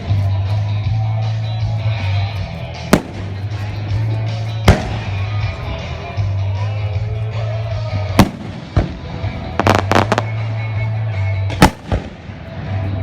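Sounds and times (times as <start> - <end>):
faint music: 0.0 - 13.0
fireworks bangs: 8.2 - 10.4, 11.5 - 12.4.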